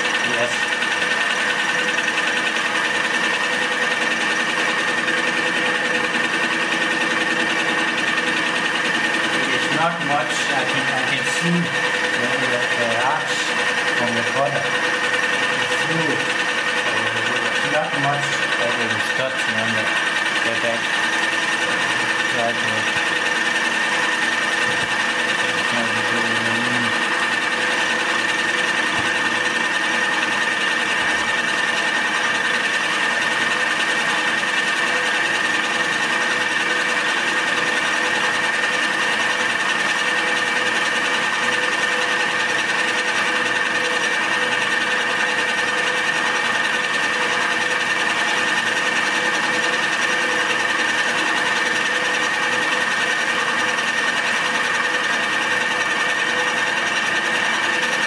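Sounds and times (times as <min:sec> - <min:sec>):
milling machine whining: 0:00.0 - 0:58.0.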